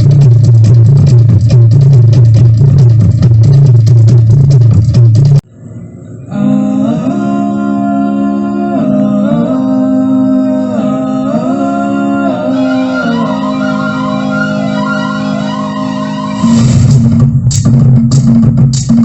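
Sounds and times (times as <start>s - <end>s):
low drone: 5.4s - 17.4s
held sliding melody notes: 10.2s - 16.8s.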